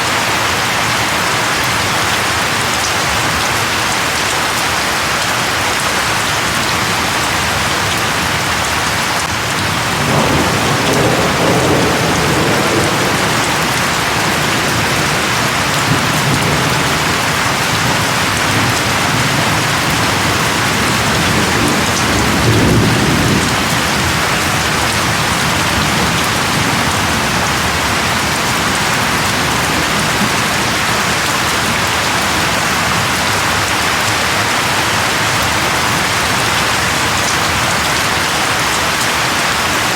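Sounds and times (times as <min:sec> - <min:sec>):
steady rain: 0:00.0 - 0:39.9
thunder rumbling: 0:09.2 - 0:33.9.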